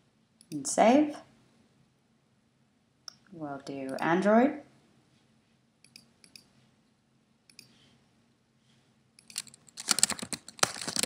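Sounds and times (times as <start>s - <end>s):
computer mouse clicks: 5.8s - 6.5s, 7.5s - 7.8s, 9.2s - 11.0s
fast typing on keyboard: 9.2s - 11.0s.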